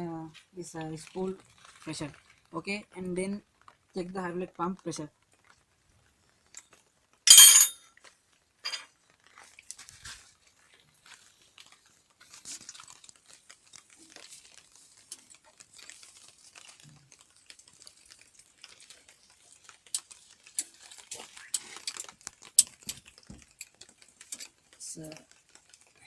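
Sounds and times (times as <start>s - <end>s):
faint clicks and scrapes: 0.3s - 2.6s, 5.2s - 7.2s, 7.8s - 26.0s
metal clatter: 7.3s - 7.8s
metal tools clinking: 7.3s - 7.8s, 8.6s - 8.9s.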